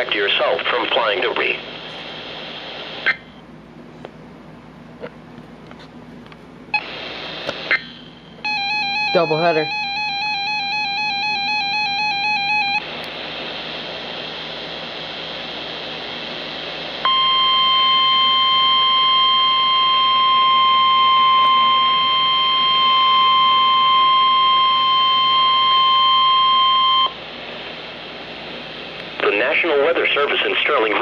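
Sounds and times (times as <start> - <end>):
radio static hissing: 0.0 - 3.4, 6.8 - 8.4, 9.1 - 9.7, 12.5 - 20.3, 27.2 - 31.0
steady alarm tone: 7.7 - 12.9, 17.0 - 27.2.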